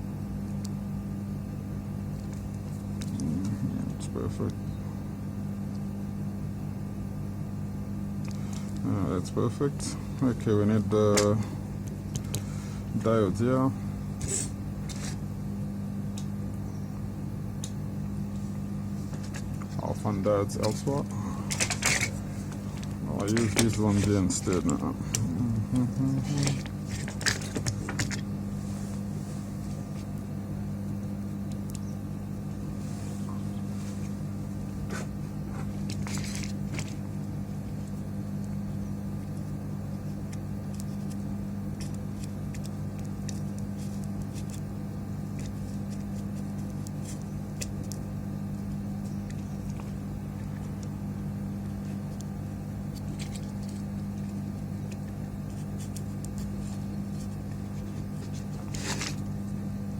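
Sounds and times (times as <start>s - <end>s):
low electrical hum: 0.0s - 59.9s.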